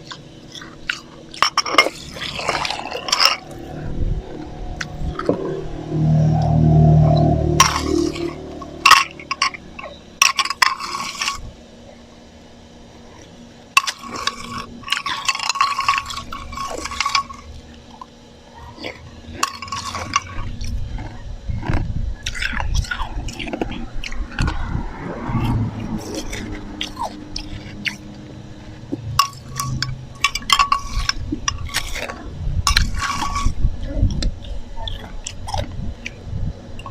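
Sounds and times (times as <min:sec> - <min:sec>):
slushy ice crunching and crackling: 0:00.0 - 0:03.7, 0:18.8 - 0:36.2.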